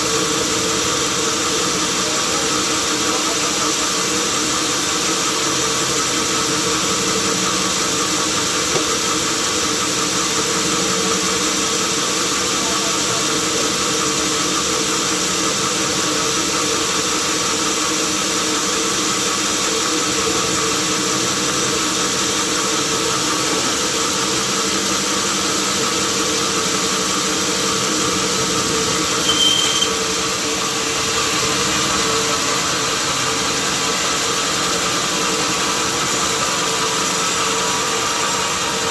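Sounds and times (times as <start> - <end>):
high-pitched machine squeal: 29.0 - 30.2.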